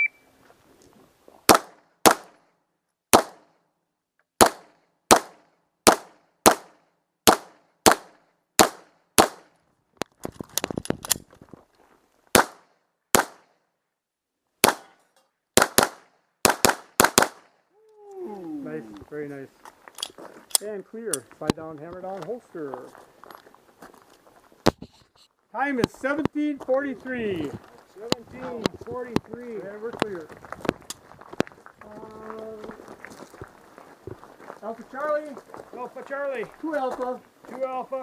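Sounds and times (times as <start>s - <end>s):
handgun shots: 1.5s - 2.4s, 12.4s - 12.6s, 13.2s - 13.4s, 14.6s - 15.0s, 15.6s - 17.4s.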